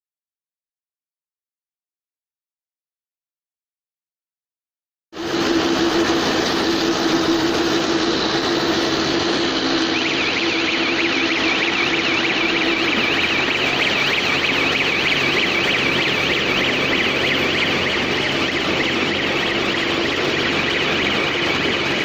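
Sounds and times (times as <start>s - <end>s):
baler machine running: 5.2s - 22.0s
electronic alarm warbling: 5.2s - 22.0s.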